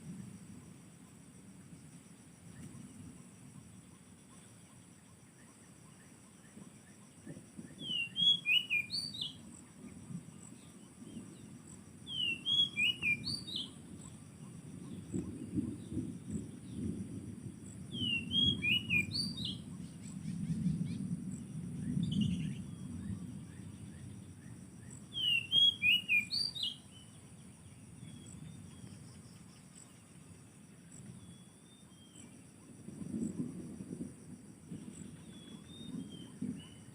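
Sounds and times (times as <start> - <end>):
bird singing whistled notes: 7.7 - 9.4, 12.1 - 14.1, 17.9 - 21.0, 21.9 - 24.1, 24.8 - 27.2, 35.0 - 36.9.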